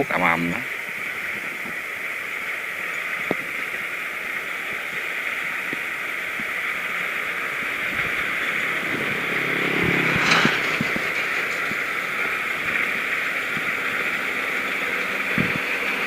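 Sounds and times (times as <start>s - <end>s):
low engine hum: 0.8s - 16.0s
combine harvester rushing hiss: 3.5s - 16.0s.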